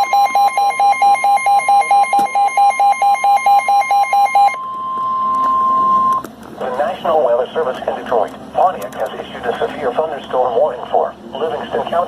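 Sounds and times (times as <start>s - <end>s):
pulsing lower beep: 0.0s - 6.2s.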